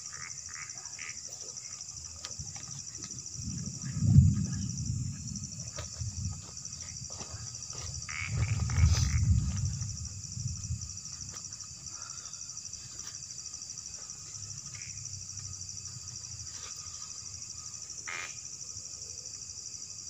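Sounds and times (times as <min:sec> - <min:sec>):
night insects trilling: 0:00.0 - 0:20.0
low rumble: 0:03.2 - 0:11.3.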